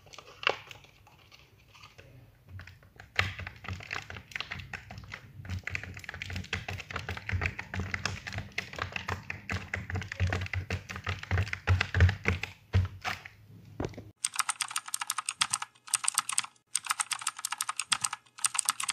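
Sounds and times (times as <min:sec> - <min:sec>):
rapid irregular clicking and tapping: 0:02.6 - 0:12.9, 0:14.1 - 0:18.9
thin high clicking bursts: 0:14.2 - 0:18.9.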